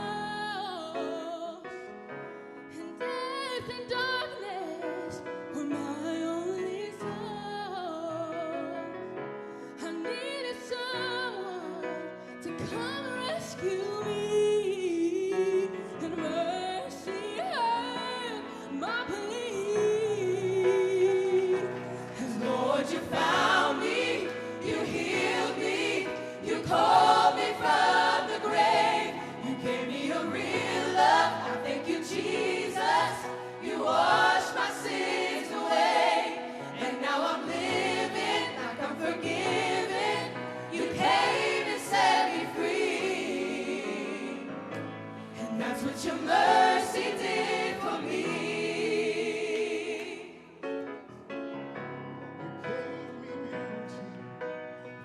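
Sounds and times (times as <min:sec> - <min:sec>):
worship band music with singing: 0:11.3 - 0:51.0.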